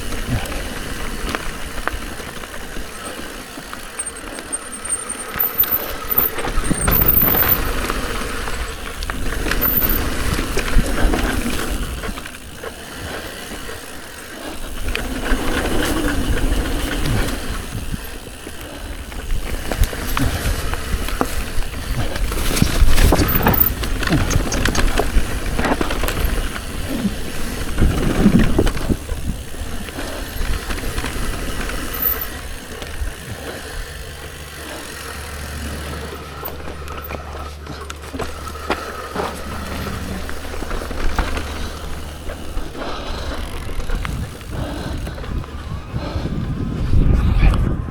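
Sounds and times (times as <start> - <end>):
bike rattling and knocking: 0.0 - 46.2
bike tyres rumbling over dirt: 0.0 - 47.9
wind buffeting microphone: 14.7 - 34.6, 38.2 - 47.9
person breathing hard: 41.2 - 47.2.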